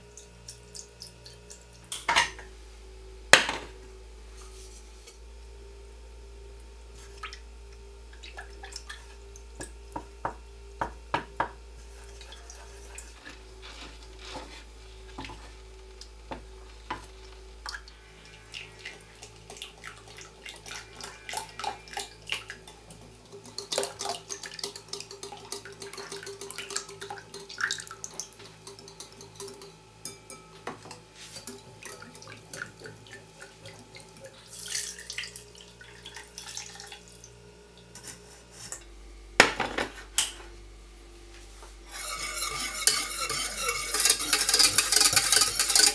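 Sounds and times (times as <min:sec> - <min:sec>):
water running: 0:16.7 - 0:30.2, 0:30.8 - 0:38.1, 0:41.9 - 0:45.9
utensils clinking against dishes: 0:41.9 - 0:45.9.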